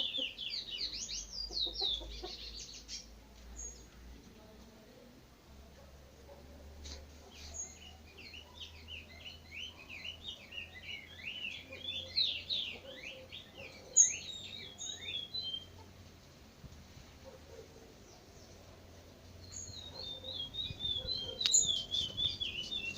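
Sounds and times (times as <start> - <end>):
songbird warbling: 19.4 - 22.9.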